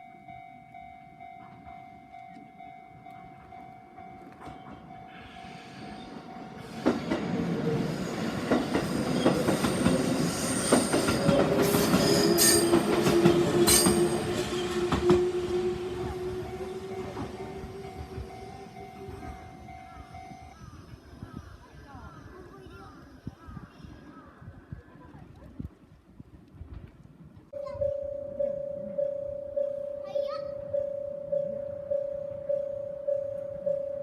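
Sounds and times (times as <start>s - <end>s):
level-crossing alarm ringing: 0.0s - 20.6s, 27.6s - 34.0s
train wheels clacking over rail joints: 8.1s - 15.8s.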